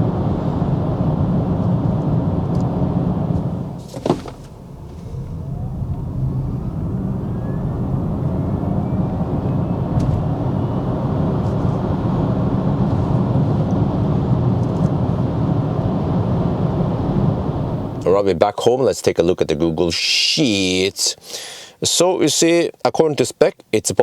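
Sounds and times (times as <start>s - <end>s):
road and tyre noise: 0.0s - 18.1s
low rumble: 0.6s - 18.1s.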